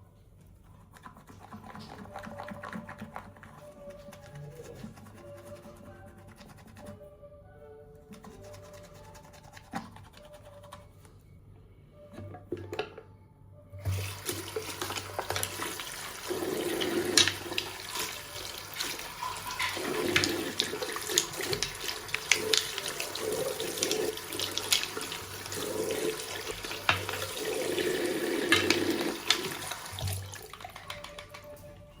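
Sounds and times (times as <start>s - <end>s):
tap water running into sink: 13.8s - 31.7s
water splashes: 13.9s - 31.5s.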